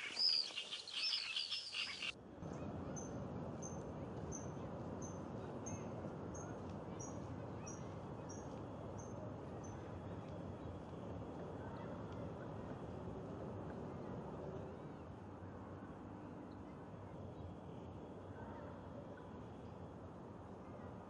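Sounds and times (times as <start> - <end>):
bird short high chirp: 0.0 - 2.1
faint outdoor background noise: 0.0 - 21.0.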